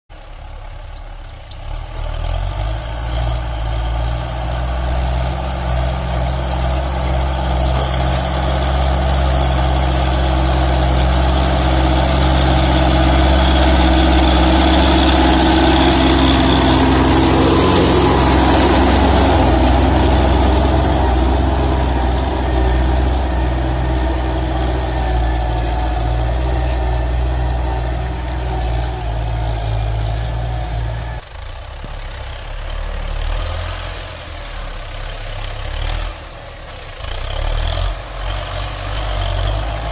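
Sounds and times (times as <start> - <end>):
tractor engine drone: 0.1 - 39.9
broad rumbling noise: 2.6 - 31.9.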